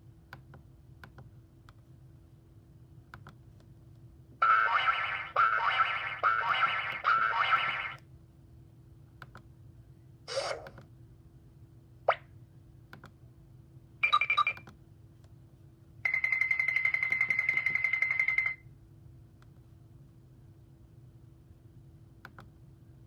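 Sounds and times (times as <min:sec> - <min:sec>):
cartoon pop: 0:04.4 - 0:08.0, 0:12.1 - 0:12.3
cartoon swish: 0:04.4 - 0:08.0, 0:10.3 - 0:10.8.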